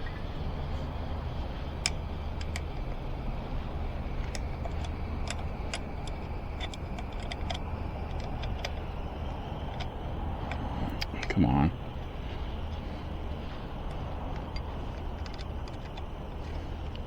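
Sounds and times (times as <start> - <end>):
low background rumble: 0.0 - 17.0
metallic clicks of hand tools: 1.8 - 2.9, 4.2 - 9.0, 13.9 - 16.1.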